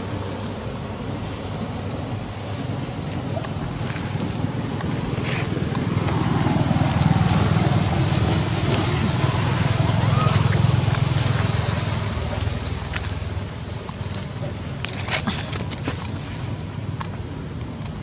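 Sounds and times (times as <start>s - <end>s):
passing vehicle engine rumble: 0.0s - 18.0s.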